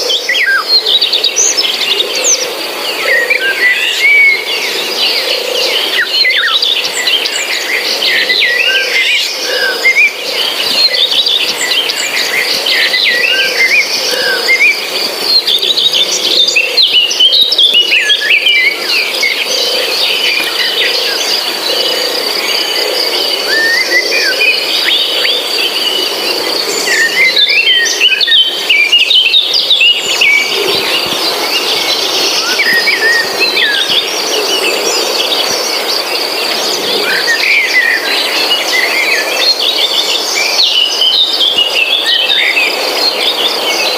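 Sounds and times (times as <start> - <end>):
birds chirping and singing: 0.0 - 43.9.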